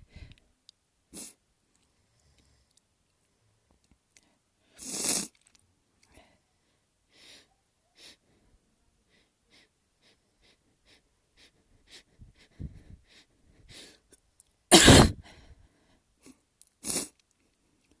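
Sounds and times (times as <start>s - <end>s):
quick breaths: 6.1s - 14.2s, 15.0s - 16.1s
person sneezing: 14.7s - 15.2s.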